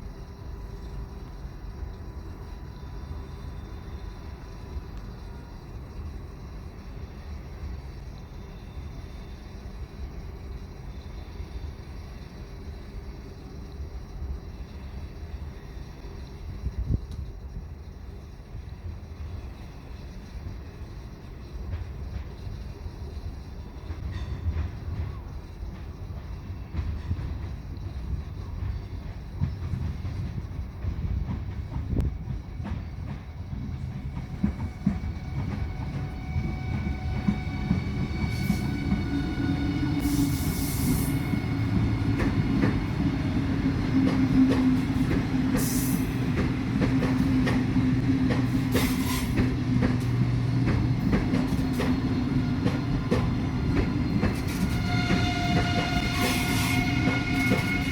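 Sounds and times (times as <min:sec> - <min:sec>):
train wheels knocking on rail joints: 0:23.8 - 0:57.9.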